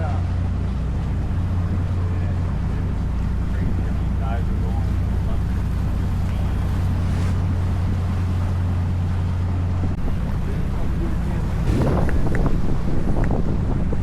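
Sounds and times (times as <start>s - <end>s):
boat engines droning: 0.0s - 14.0s
rushing water: 0.0s - 14.0s
wind buffeting microphone: 0.4s - 14.0s.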